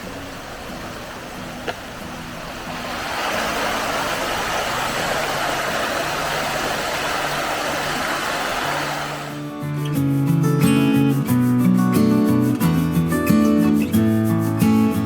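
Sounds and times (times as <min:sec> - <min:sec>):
shallow stream flowing: 0:00.0 - 0:09.5.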